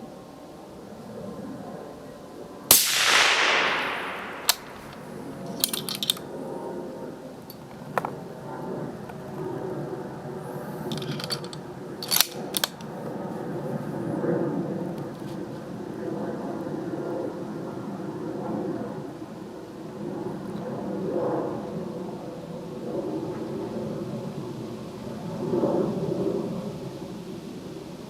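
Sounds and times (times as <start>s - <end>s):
suppressed rifle shot: 2.7s - 5.2s
sharp clicks and knocks: 3.1s - 5.0s.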